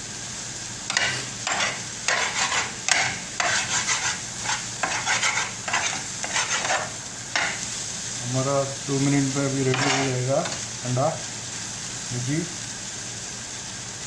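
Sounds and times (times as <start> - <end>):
eggs sizzling in a pan: 0.0 - 14.0
spatula scraping a pan: 0.9 - 7.6, 9.6 - 10.6.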